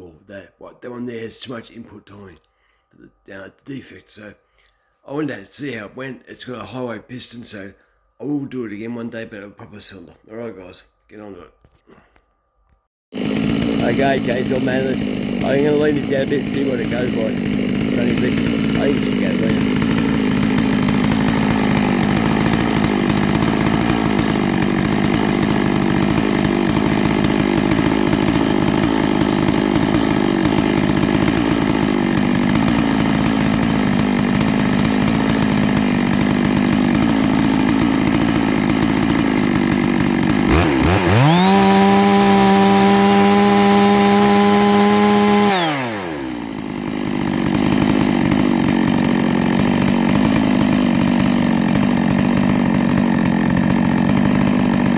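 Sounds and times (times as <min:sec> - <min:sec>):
chainsaw revving: 0:13.1 - 0:54.9.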